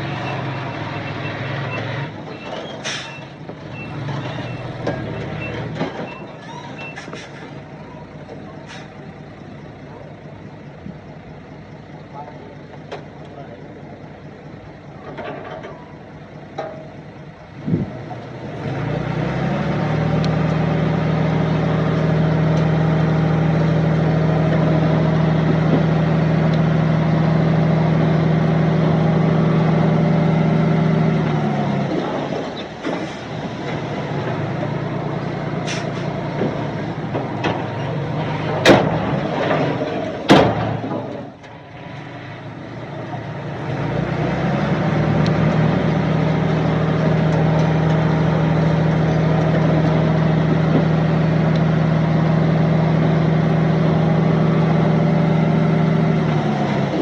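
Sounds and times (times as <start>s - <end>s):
diesel engine revving: 0.0s - 57.0s
metal knocks and clanks: 2.3s - 7.4s, 15.0s - 17.0s, 36.0s - 41.6s.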